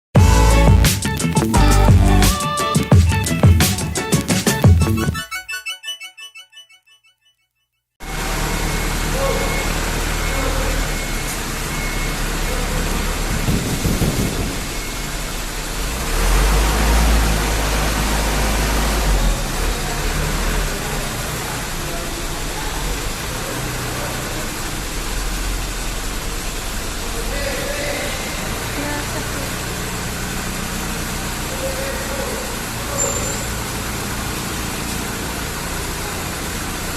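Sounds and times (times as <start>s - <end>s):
diesel truck engine running: 0.2s - 5.2s, 8.0s - 36.9s
loud even rushing noise: 12.9s - 21.8s.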